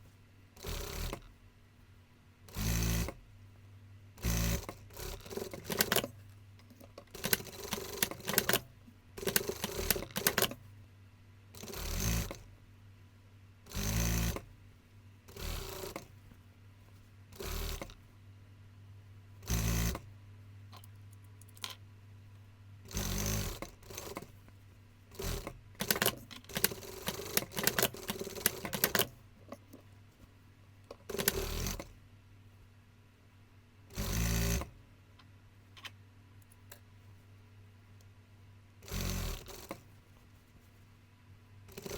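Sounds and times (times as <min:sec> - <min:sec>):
sewing machine running: 0:00.6 - 0:01.2, 0:02.5 - 0:03.2, 0:04.2 - 0:06.1, 0:07.2 - 0:08.6, 0:09.2 - 0:10.5, 0:11.6 - 0:12.4, 0:13.7 - 0:14.4, 0:15.3 - 0:16.0, 0:17.4 - 0:18.0, 0:19.4 - 0:20.0, 0:22.9 - 0:24.3, 0:25.1 - 0:29.1, 0:31.1 - 0:31.9, 0:33.9 - 0:34.7, 0:38.8 - 0:39.8, 0:41.7 - 0:41.9.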